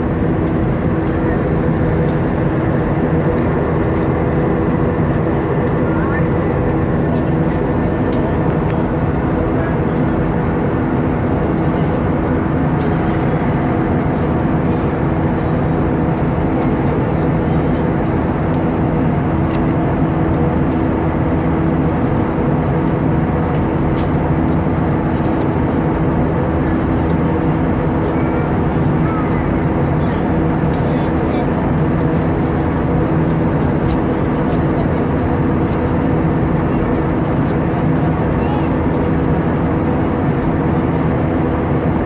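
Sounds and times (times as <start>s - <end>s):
jet engine cabin rush: 0.0s - 42.0s
steady low hums: 0.0s - 42.0s.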